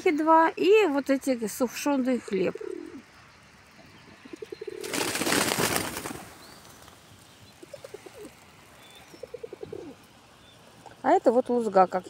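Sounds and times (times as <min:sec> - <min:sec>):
pigeons cooing: 0:02.2 - 0:03.2, 0:03.8 - 0:06.4, 0:07.5 - 0:10.0
loud rustling rush: 0:04.8 - 0:07.4.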